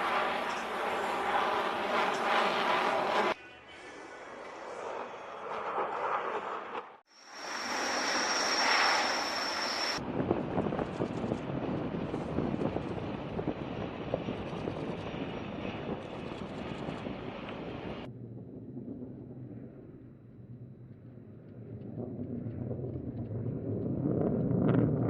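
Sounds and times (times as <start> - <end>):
jet engine whine and rush: 0.0 - 3.4, 4.2 - 20.6
jet engine crackling: 4.4 - 10.0.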